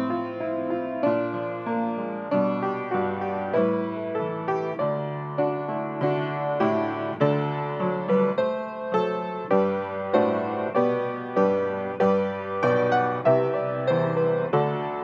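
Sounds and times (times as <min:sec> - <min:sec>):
solo piano chords: 0:00.0 - 0:15.0.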